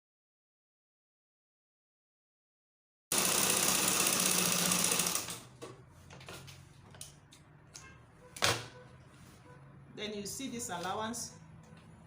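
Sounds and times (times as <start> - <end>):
sewing machine running: 3.1 - 5.5.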